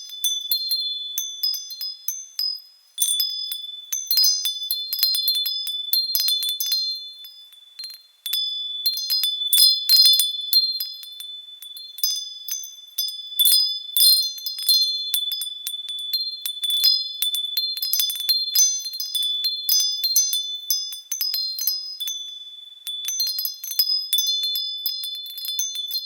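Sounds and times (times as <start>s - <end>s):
wind chimes ringing: 0.0s - 26.0s.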